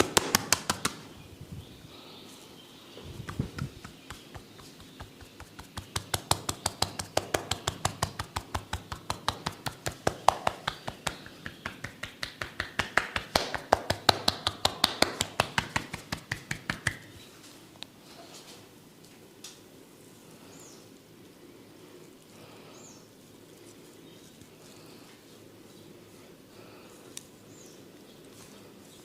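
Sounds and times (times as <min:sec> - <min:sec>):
rapid tapping of head massage: 0:00.0 - 0:01.1, 0:03.1 - 0:17.2.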